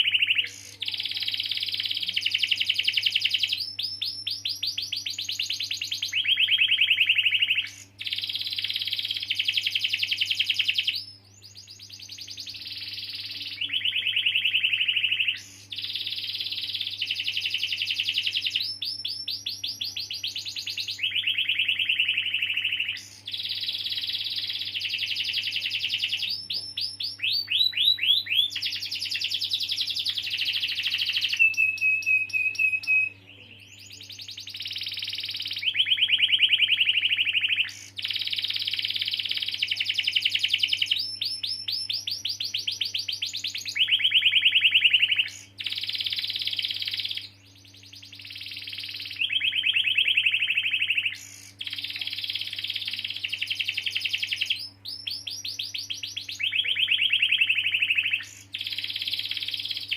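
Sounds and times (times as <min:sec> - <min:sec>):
whistled bird note: 0:00.0 - 0:47.3
canary singing trills: 0:00.0 - 0:59.9.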